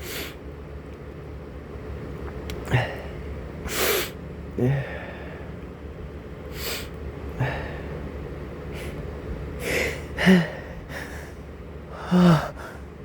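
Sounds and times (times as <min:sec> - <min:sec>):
steady low hum: 0:00.0 - 0:13.0
man gasping and snorting: 0:02.7 - 0:05.4, 0:06.5 - 0:08.0, 0:09.6 - 0:12.9
voiced catch of breath: 0:02.7 - 0:05.5.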